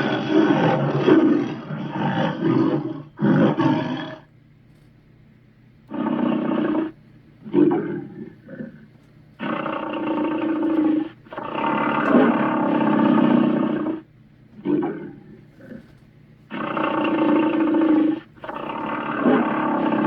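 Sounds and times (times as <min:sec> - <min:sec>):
monster roaring: 0:00.0 - 0:04.2, 0:16.5 - 0:20.0.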